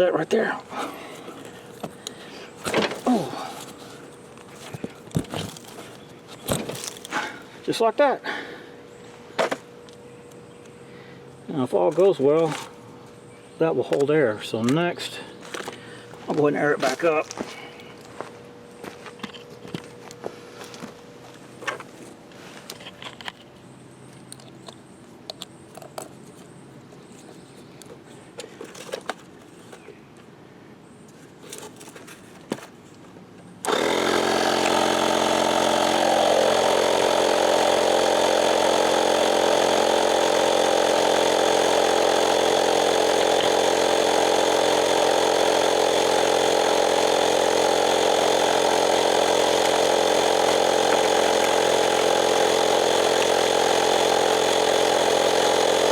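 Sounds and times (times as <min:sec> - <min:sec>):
air compressor running: 0:00.0 - 0:09.8, 0:33.6 - 0:55.9.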